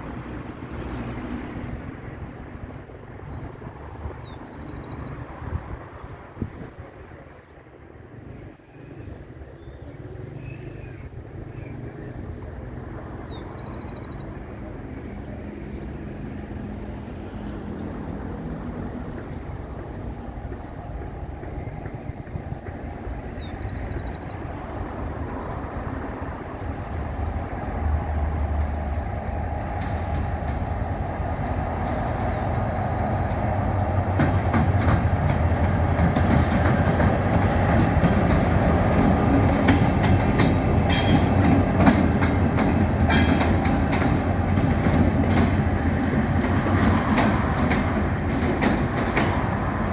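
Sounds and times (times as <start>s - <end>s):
diesel locomotive engine drone: 0.0s - 49.9s
train wheels clattering over rail joints: 18.7s - 49.9s.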